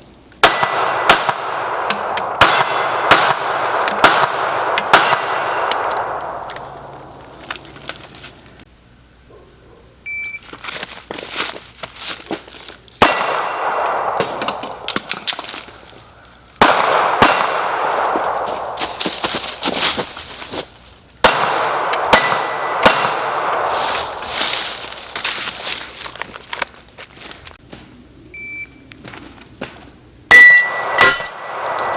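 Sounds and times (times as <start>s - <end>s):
ringing metallic clang of steel: 0.4s - 3.0s, 4.8s - 7.4s, 13.0s - 14.8s, 17.2s - 19.7s, 21.2s - 25.1s, 30.3s - 31.9s
pistol shots: 0.4s - 7.2s, 13.0s - 15.4s, 16.6s - 19.0s, 21.2s - 24.3s.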